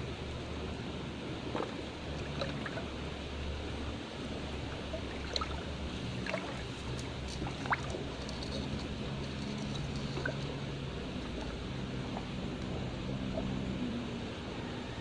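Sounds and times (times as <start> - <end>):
water rushing: 1.4 - 9.2.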